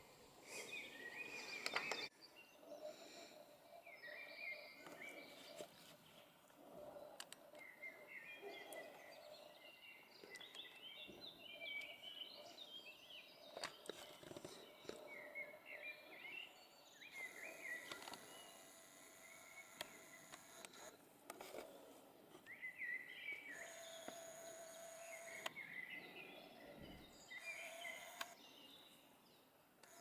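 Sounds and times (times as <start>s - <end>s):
small birds twittering: 0.4s - 30.0s
sharp clicks: 17.1s - 21.6s, 23.5s - 25.6s, 27.3s - 28.4s, 29.8s - 30.0s.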